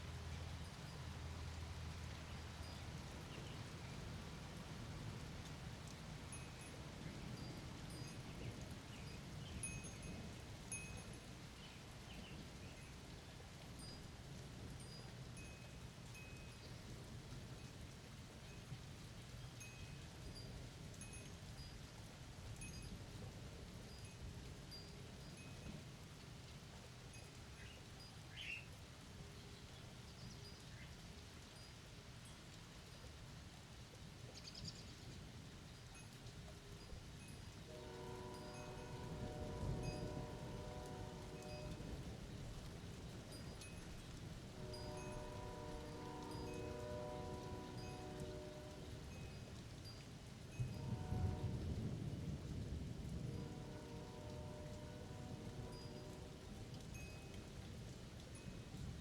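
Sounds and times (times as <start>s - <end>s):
wind chimes ringing: 9.6s - 11.2s, 37.8s - 42.0s, 44.6s - 50.0s
low storm rumble: 37.6s - 59.0s.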